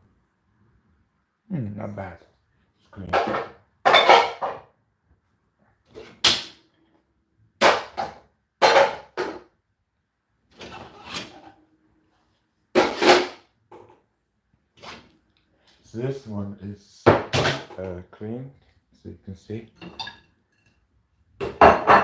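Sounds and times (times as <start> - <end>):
dishes knocking and scraping: 3.0 - 4.7, 7.6 - 9.5, 12.7 - 14.0, 19.8 - 20.8, 21.4 - 22.0.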